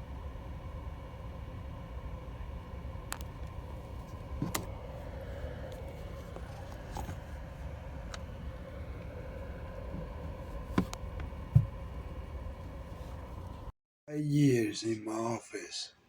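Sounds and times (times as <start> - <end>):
electric fan humming: 0.0 - 13.7.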